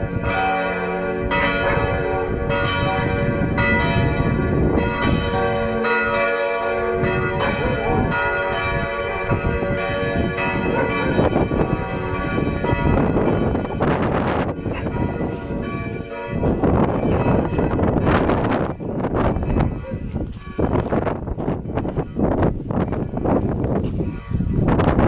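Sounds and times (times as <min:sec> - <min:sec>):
church bells pealing: 0:00.0 - 0:25.0.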